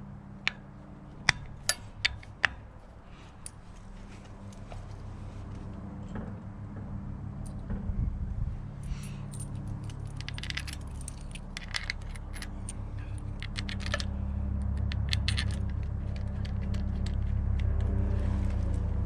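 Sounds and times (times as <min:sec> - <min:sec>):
low hum: 0:00.0 - 0:19.0
metal tools clinking: 0:08.8 - 0:14.1, 0:14.7 - 0:17.9.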